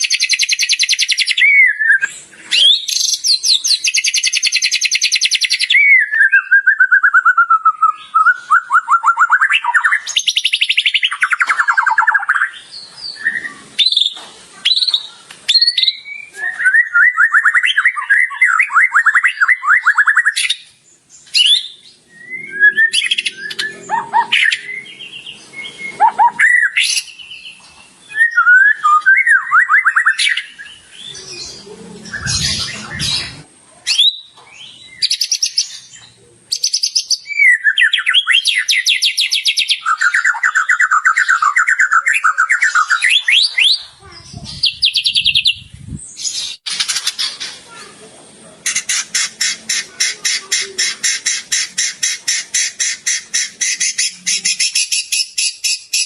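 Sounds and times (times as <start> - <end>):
bird singing varied phrases: 0.0 - 47.9, 48.6 - 56.0.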